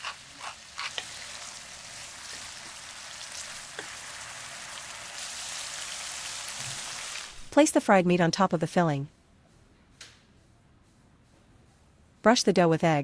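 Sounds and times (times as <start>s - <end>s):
oil crackling and popping: 0.0s - 7.5s
pork sizzling in oil: 0.0s - 7.6s.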